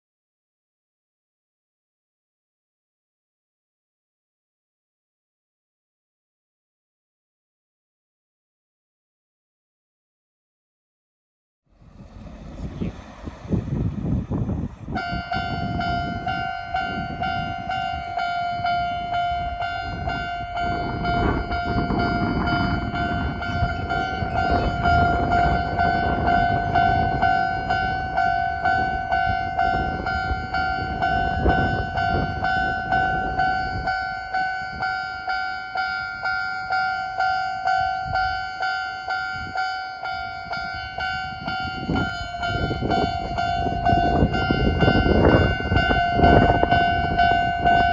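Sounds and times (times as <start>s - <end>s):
low rumbling noise: 11.7s - 17.6s, 19.5s - 33.9s
level-crossing alarm dinging: 15.0s - 47.9s.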